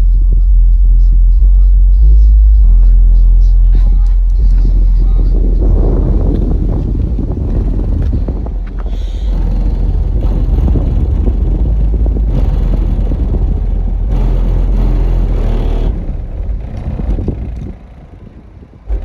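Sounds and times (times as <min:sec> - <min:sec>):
loud music with heavy deep bass: 0:00.0 - 0:17.3.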